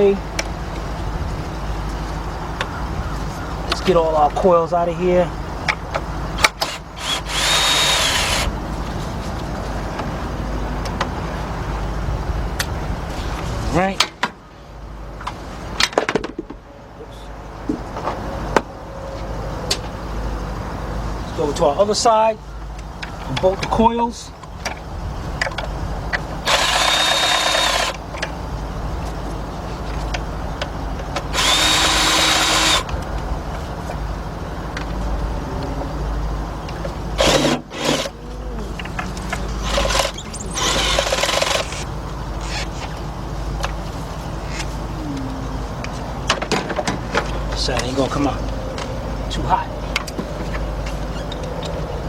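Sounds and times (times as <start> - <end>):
low steady rumble: 0.0 - 15.8, 16.5 - 52.0
cordless power tool whining: 6.4 - 8.5, 26.4 - 28.0, 31.3 - 32.9, 37.2 - 42.6.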